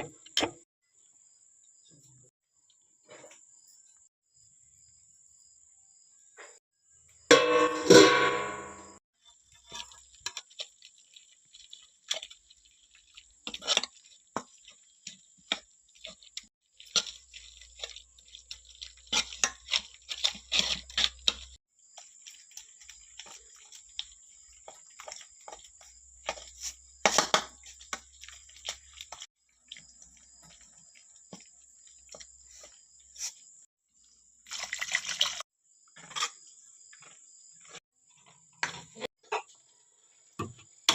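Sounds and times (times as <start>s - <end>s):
water dripping and splashing: 9.5s - 26.0s, 27.6s - 32.8s, 34.4s - 35.4s.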